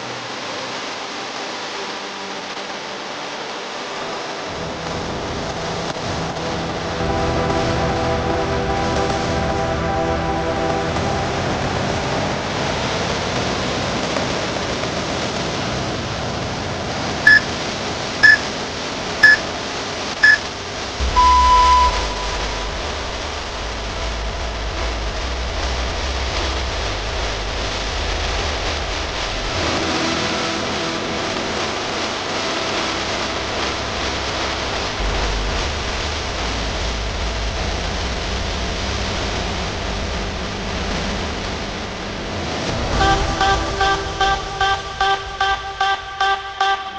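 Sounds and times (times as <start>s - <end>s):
steady background noise: 0.0s - 46.9s
interval timer beeping: 17.3s - 17.5s, 18.2s - 18.5s, 19.2s - 19.5s, 20.2s - 20.4s, 21.0s - 22.9s, 43.0s - 46.9s.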